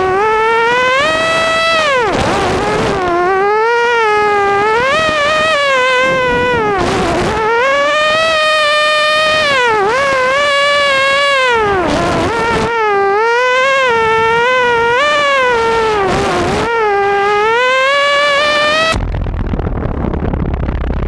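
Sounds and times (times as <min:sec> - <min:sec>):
quadcopter motors whining: 0:00.0 - 0:19.0
rush of air: 0:18.9 - 0:21.0.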